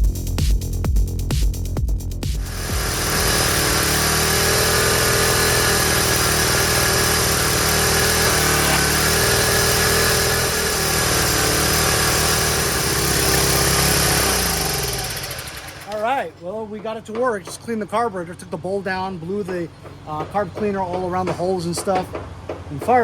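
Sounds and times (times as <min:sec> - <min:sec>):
small gasoline engine running: 0:02.4 - 0:16.2.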